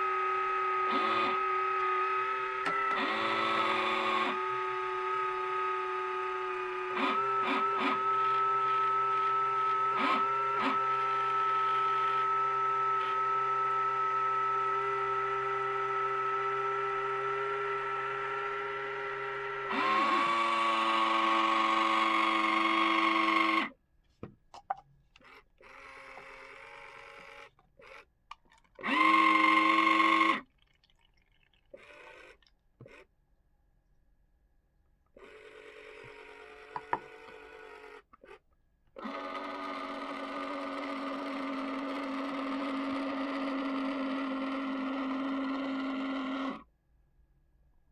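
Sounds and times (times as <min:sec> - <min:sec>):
small electric motors whining: 0:00.0 - 0:23.8, 0:25.1 - 0:30.5, 0:31.7 - 0:33.1, 0:35.2 - 0:38.4, 0:39.0 - 0:46.7.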